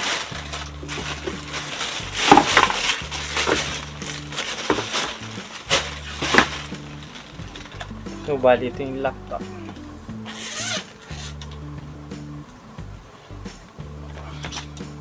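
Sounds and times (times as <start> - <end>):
small objects rustling and knocking: 0.0 - 9.0, 12.9 - 15.0
quiet background music: 0.0 - 15.0.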